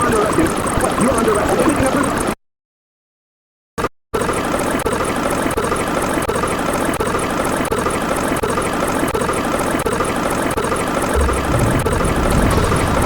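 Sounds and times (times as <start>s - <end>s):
aircraft engine noise: 10.9s - 13.0s.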